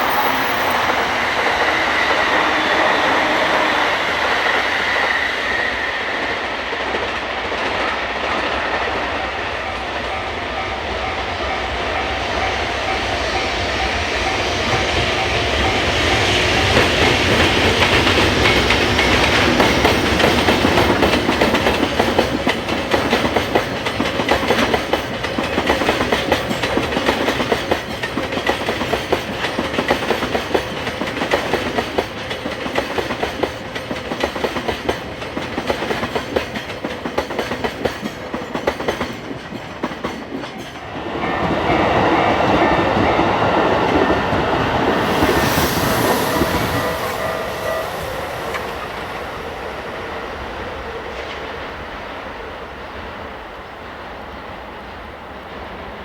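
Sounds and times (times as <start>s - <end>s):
train rumbling: 0.0s - 56.0s
train wheels clacking over rail joints: 15.0s - 44.2s.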